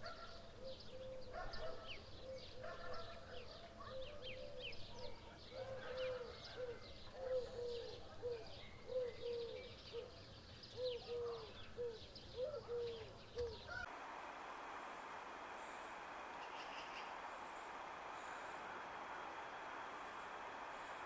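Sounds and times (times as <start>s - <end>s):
small birds chirping: 9.0s - 21.0s
dove cooing: 10.8s - 13.0s, 13.9s - 21.0s
steady hiss: 13.9s - 21.0s.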